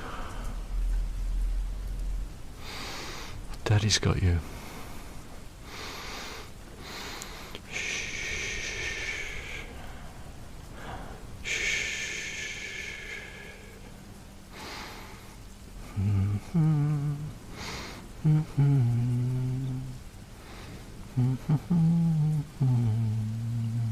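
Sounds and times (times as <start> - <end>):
man breathing deeply: 0.0 - 0.8, 2.6 - 3.4, 4.5 - 18.8, 20.4 - 21.5
man humming: 15.8 - 17.5, 18.1 - 20.1, 21.1 - 23.9.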